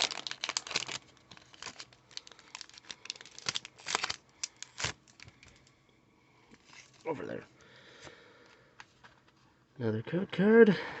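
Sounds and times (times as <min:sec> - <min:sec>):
foil wrapper crinkling and tearing: 0:00.0 - 0:05.7.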